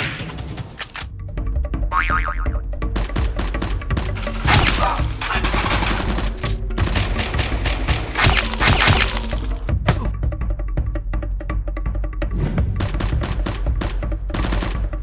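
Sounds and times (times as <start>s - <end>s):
action background music: 0.0s - 15.0s
rapid gunfire sound effects: 2.9s - 9.6s, 12.8s - 15.0s
shattering noises: 4.2s - 9.6s.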